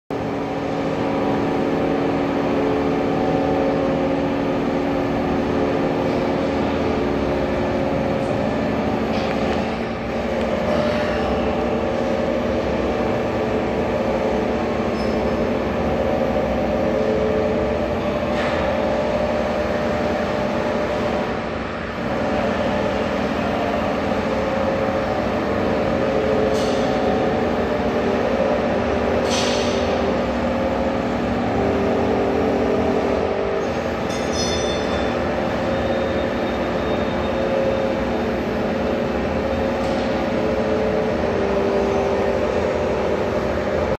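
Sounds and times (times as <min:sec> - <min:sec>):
pipe bending machine hum: 0:00.1 - 0:43.9
metal clanks: 0:34.0 - 0:35.2.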